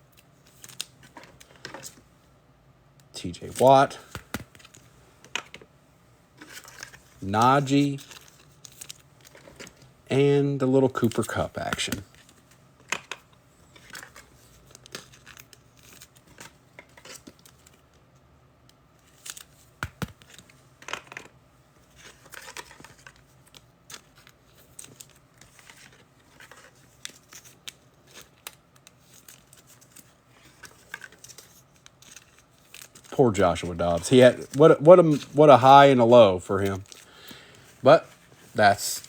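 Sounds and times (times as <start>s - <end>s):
cards clicking: 3.5s - 4.8s, 11.0s - 12.2s.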